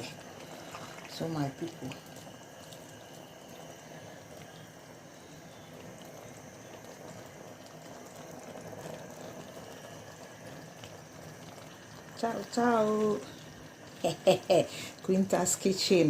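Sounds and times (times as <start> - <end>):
stew bubbling: 0.0 - 16.0.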